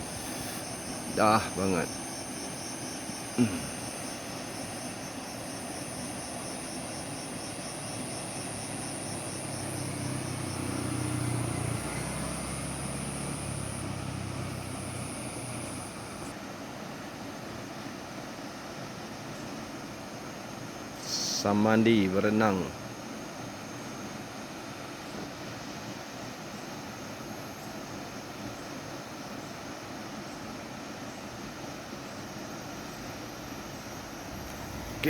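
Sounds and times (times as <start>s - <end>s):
high insect buzz: 0.0s - 16.4s, 31.1s - 35.0s
steady rushing hiss: 0.0s - 35.0s
low engine drone: 9.4s - 16.3s, 33.6s - 35.0s.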